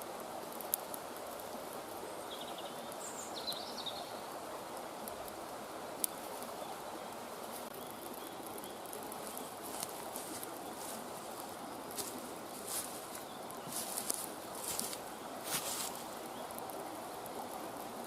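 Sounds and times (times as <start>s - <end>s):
breeze in woodland: 0.0s - 18.0s
bird chirps: 2.2s - 4.2s.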